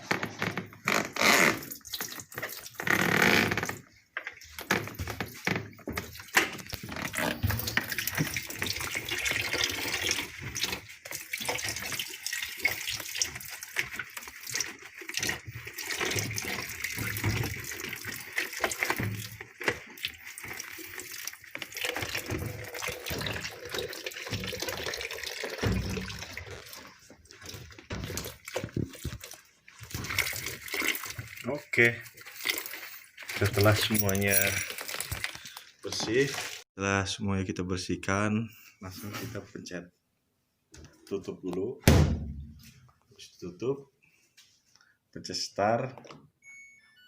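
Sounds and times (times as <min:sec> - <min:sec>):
water running from a tap: 0:01.5 - 0:05.2, 0:05.9 - 0:36.6
knocks and clatter of parts: 0:32.4 - 0:36.6.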